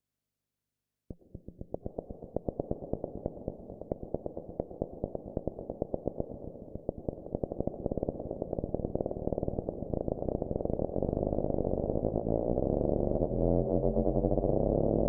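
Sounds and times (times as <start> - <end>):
buzzy synthesizer drone: 10.8 - 15.0.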